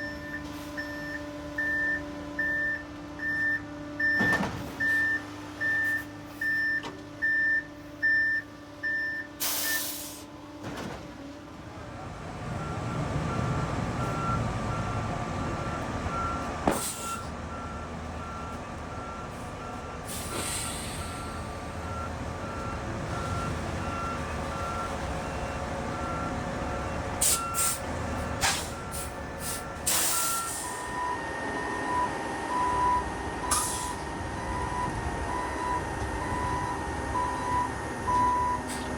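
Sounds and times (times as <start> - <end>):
reversing alarm beeping: 0.0 - 10.2, 15.6 - 38.9
diesel engine running: 0.0 - 38.9
air brake hisses: 9.4 - 10.3, 16.7 - 17.3, 20.1 - 21.4, 27.2 - 31.0, 33.5 - 34.0
different-pitched reversing alarm: 15.7 - 38.9.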